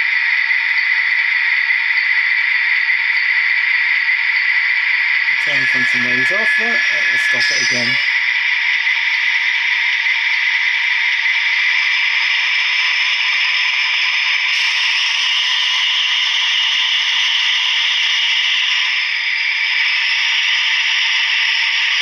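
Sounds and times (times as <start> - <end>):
simulated diesel engine drone: 5.1 - 12.6.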